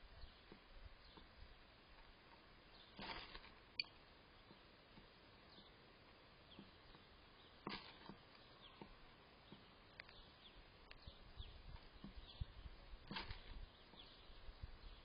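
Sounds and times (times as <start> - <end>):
faint bird chirps: 6.4 - 15.0.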